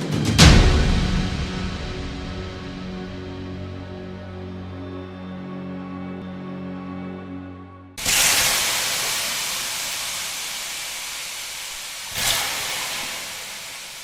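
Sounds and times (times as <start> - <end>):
loud hissing: 8.0 - 14.0.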